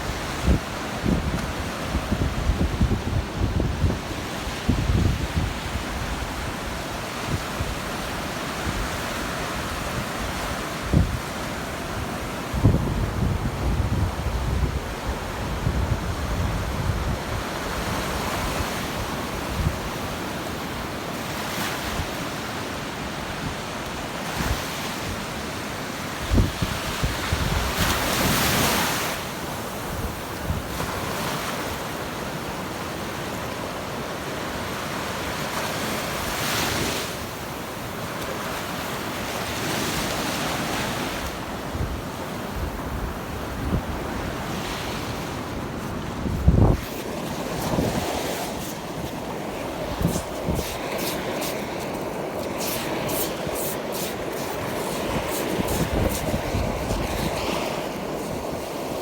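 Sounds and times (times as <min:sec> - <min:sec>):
wind buffeting microphone: 0:00.0 - 0:07.9, 0:10.0 - 0:11.3, 0:12.5 - 0:17.5, 0:41.6 - 0:59.0
ocean surf breaking: 0:23.9 - 0:59.0.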